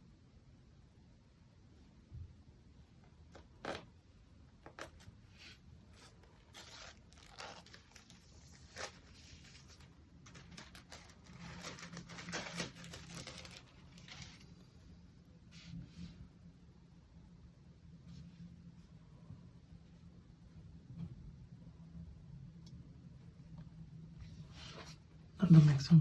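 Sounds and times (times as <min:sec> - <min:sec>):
wrapping rustling and scraping: 0:04.6 - 0:14.7.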